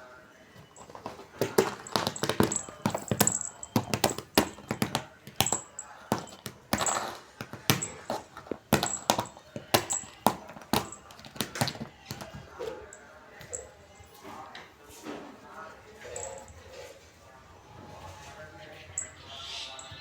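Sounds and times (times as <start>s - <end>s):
rapid clicking and tapping: 0.6s - 12.5s.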